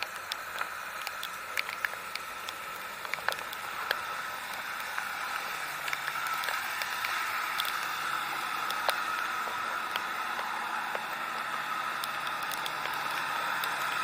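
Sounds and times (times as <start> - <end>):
heavy rain falling: 0.0 - 14.0.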